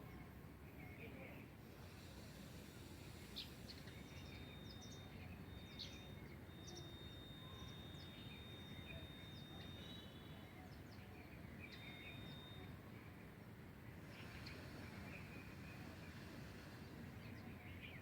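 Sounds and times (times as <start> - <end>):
thin steady high tone: 1.9 - 18.0.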